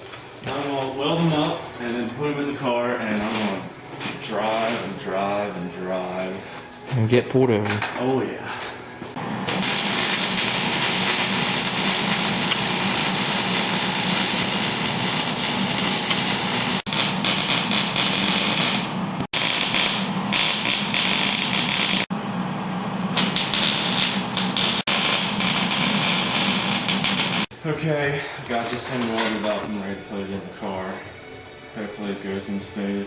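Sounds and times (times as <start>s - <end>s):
welding sizzling hiss: 9.4s - 22.1s, 23.2s - 27.5s.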